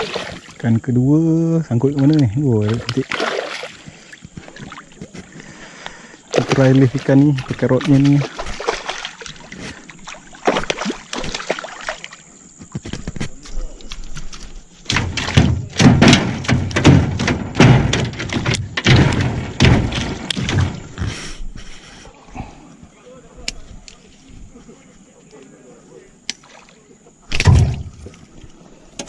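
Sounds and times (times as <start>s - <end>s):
fish thrashing and splashing: 0.0s - 0.6s, 2.0s - 21.4s.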